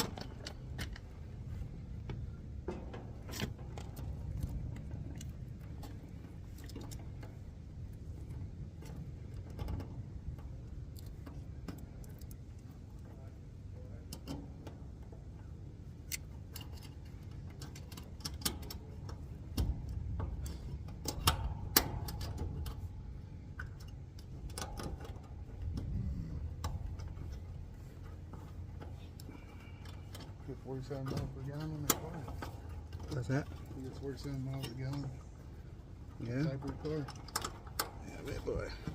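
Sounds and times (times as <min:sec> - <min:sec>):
clicks and knocks on metal: 0:00.0 - 0:38.9
low steady hum: 0:00.0 - 0:38.9.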